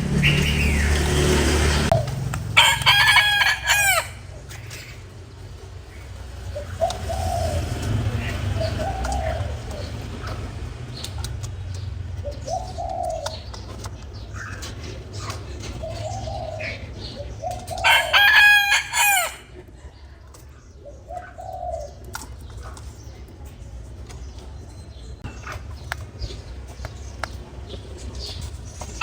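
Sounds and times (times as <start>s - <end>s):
rooster crowing: 2.6s - 4.3s, 17.8s - 19.5s.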